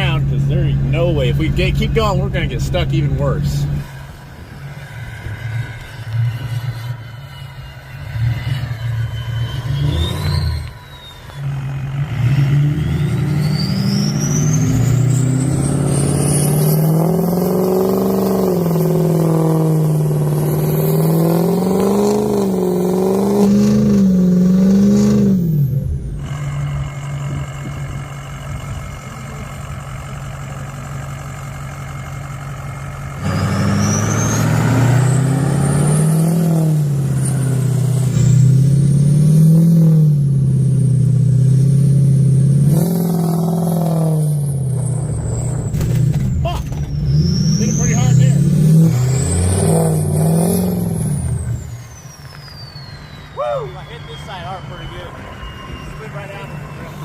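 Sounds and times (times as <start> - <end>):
diesel truck engine revving: 0.0 - 57.0
faint rising whistle: 3.6 - 26.8, 33.2 - 38.9, 46.8 - 57.0.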